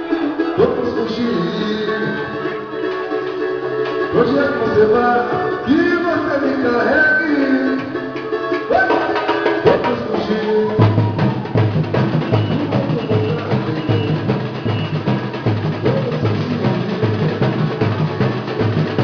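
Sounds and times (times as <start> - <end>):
percussion group drumming: 0.0 - 19.0
low drum beat: 9.6 - 19.0.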